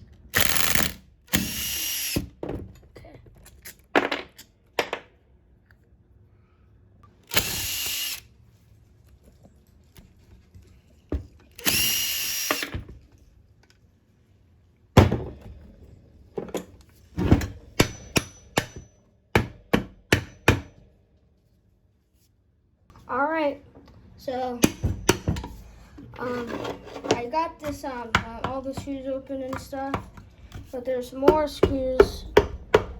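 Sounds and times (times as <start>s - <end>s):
metal parts knocking and clicking: 0.4s - 1.5s
power drill whining: 0.4s - 2.2s, 7.3s - 8.2s, 11.6s - 12.7s.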